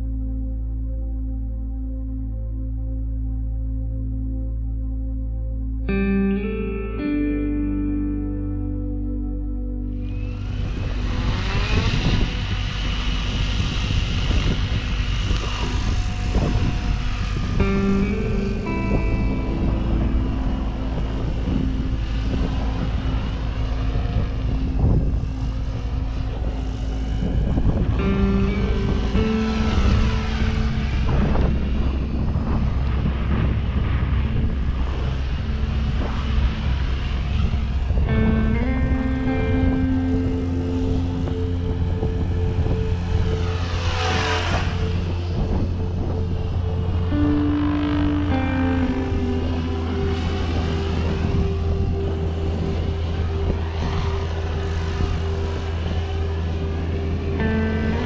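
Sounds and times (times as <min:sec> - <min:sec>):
gusty low rumble: 0:00.0 - 0:58.0
rotor noise: 0:09.9 - 0:58.0
rc helicopter motor whine: 0:10.1 - 0:38.4, 0:40.4 - 0:48.1, 0:49.0 - 0:58.0.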